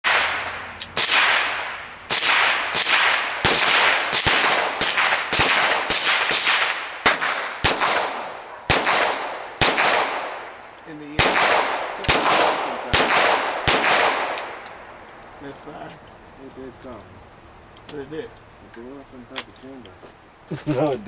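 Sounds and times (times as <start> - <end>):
rifle shots echoing: 0.0 - 14.7.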